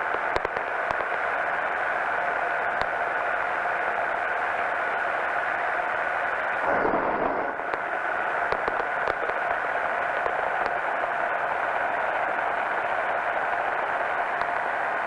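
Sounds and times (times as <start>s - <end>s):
faint ticks: 0.1s - 1.3s, 8.5s - 9.5s, 14.4s - 14.8s.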